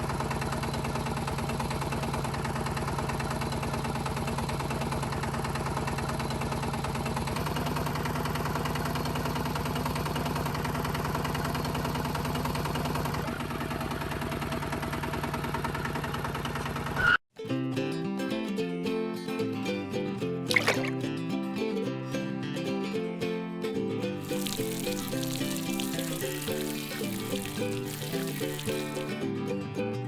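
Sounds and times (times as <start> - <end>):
small tractor motor running: 0.0 - 17.2, 24.2 - 29.3
music: 17.4 - 30.0.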